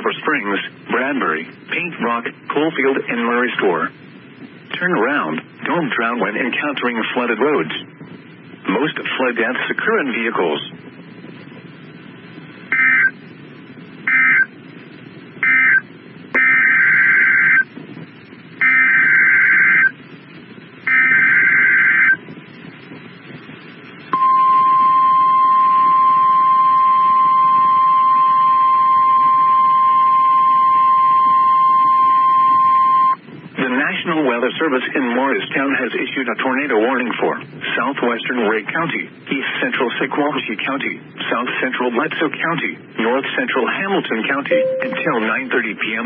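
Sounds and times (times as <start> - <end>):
single-pitch warning alarm tone: 12.7 - 13.1, 14.1 - 14.5, 15.4 - 15.8, 16.4 - 17.6, 18.6 - 19.9, 20.9 - 22.2, 24.1 - 33.2, 44.5 - 45.4
data burst squawks: 14.1 - 14.5, 15.4 - 15.8.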